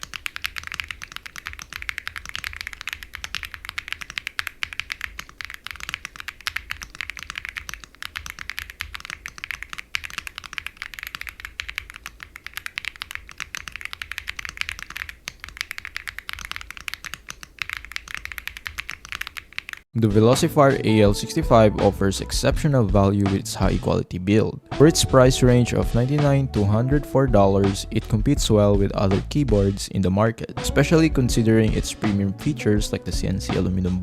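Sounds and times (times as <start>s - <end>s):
mechanical keyboard typing: 0.0s - 19.9s.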